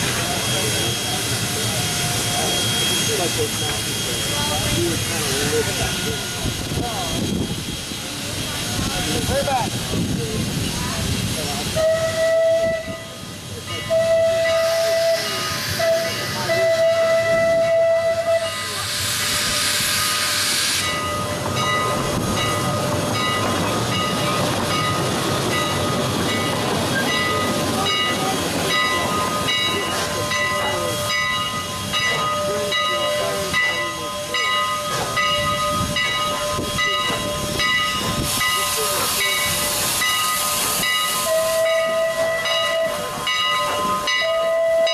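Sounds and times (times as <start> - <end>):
steam locomotive chime whistle: 0.0 - 7.5, 11.6 - 44.9
steam hissing: 0.0 - 44.9.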